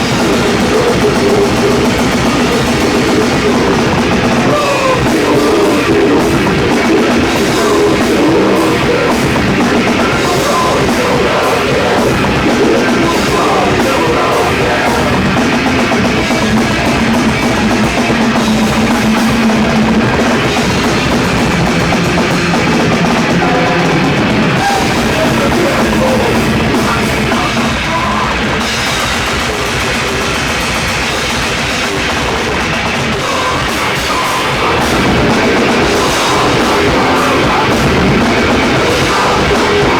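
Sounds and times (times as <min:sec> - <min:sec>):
heavy metal band playing live: 0:00.0 - 0:39.9.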